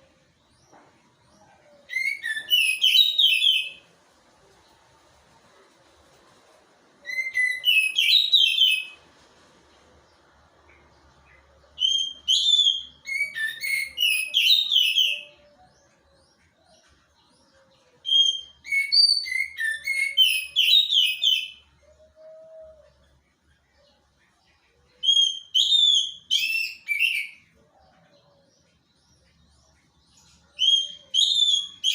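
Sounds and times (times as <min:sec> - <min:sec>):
songbird singing high whistles: 0:01.9 - 0:03.8, 0:07.0 - 0:09.0, 0:11.8 - 0:15.4, 0:18.1 - 0:21.6, 0:25.0 - 0:27.4, 0:30.6 - 0:31.9.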